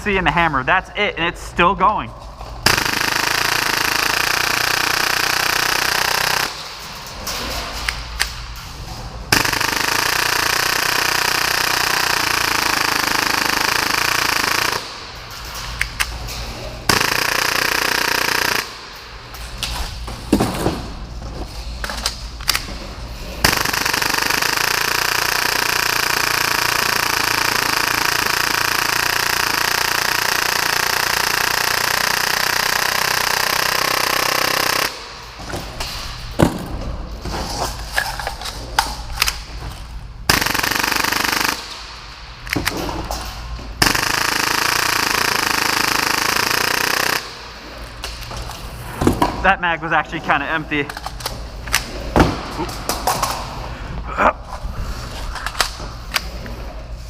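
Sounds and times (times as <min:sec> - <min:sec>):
airsoft pistol firing bursts: 0:02.6 - 0:06.6, 0:09.3 - 0:15.0, 0:16.9 - 0:18.9, 0:23.4 - 0:35.2, 0:40.3 - 0:41.9, 0:43.8 - 0:47.6.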